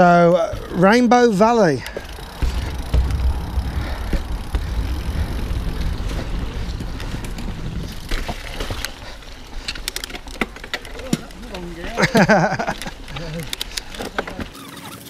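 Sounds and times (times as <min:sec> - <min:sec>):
bike clicks and rattles: 0:00.0 - 0:15.0
bike tyres rolling on dirt: 0:00.0 - 0:15.0
wind rumble on microphone: 0:02.2 - 0:10.3.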